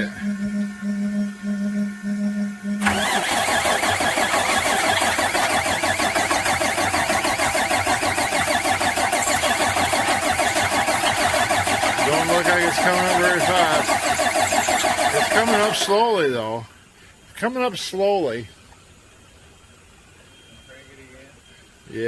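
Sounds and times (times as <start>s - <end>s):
electric fuel pump hum: 0.0s - 16.6s
diesel engine cranking: 2.8s - 16.4s.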